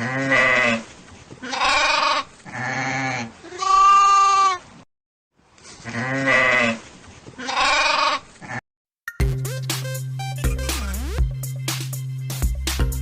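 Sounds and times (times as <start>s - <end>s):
sheep bleating: 0.0s - 0.8s, 1.4s - 4.6s, 5.9s - 6.8s, 7.4s - 8.6s.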